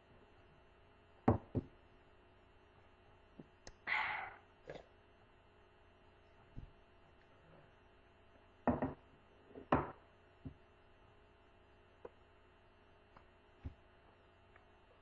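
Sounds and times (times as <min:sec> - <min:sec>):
scattered knocks and thuds: 0:08.7 - 0:09.0.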